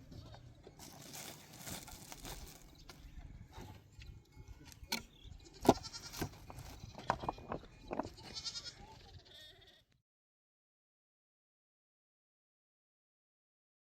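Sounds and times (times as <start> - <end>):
sheep bleating: 5.3 - 7.1, 8.1 - 10.0.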